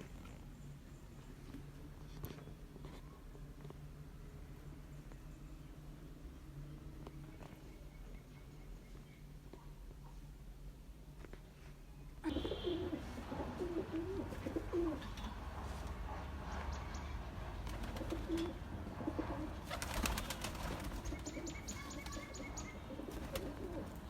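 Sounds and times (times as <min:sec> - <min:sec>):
pigeons cooing: 0:12.2 - 0:24.0
wings flapping: 0:17.5 - 0:24.0.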